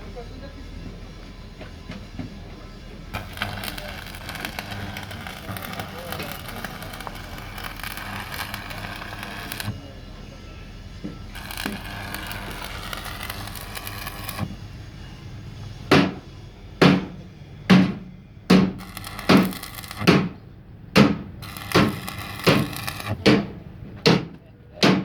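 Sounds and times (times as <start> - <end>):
steady rough noise: 3.0 - 10.2, 11.3 - 14.6, 18.5 - 23.2.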